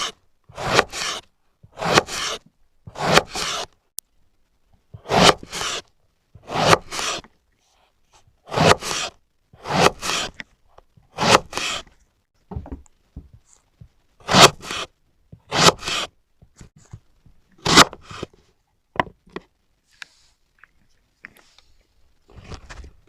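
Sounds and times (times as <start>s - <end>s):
knife cutting eggplant: 0.0s - 3.7s, 5.0s - 5.8s, 6.4s - 7.3s, 8.5s - 10.5s, 11.1s - 11.9s.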